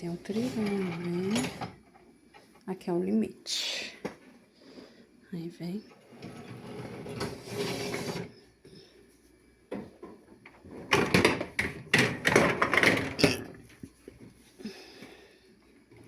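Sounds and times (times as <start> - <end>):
dishwasher rack sliding and rattling: 0.2 - 1.8, 6.1 - 8.3.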